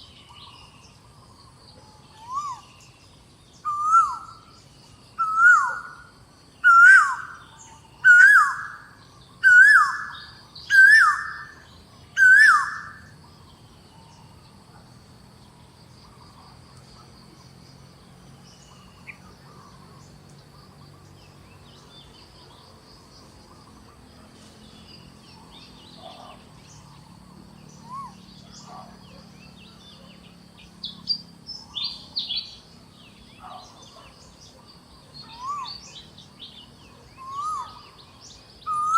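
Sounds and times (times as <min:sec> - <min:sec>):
forest background: 0:00.0 - 0:38.9
whistled calls: 0:02.0 - 0:03.0, 0:03.6 - 0:13.2, 0:24.7 - 0:38.9.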